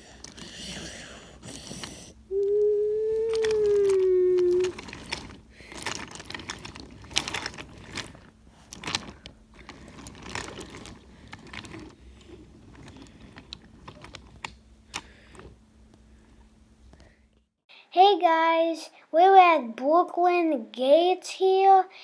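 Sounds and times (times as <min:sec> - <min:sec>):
faint motor hum: 0:00.0 - 0:17.5
toy train wheels clattering: 0:03.2 - 0:15.5.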